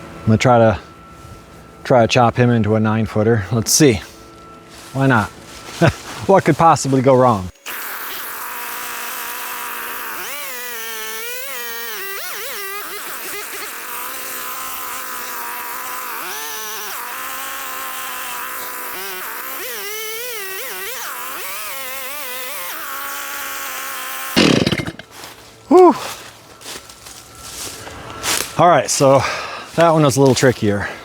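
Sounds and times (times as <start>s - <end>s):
chainsaw cutting log: 2.7s - 25.5s.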